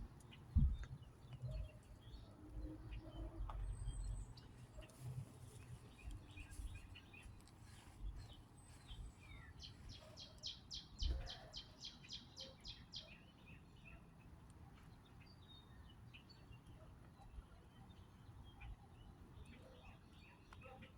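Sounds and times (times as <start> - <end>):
thump: 0.6 - 0.9
bird chirps: 8.2 - 13.3.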